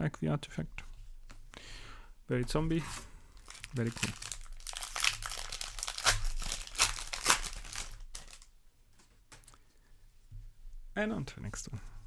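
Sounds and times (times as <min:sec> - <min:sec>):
foil wrapper crinkling: 0:02.6 - 0:08.5.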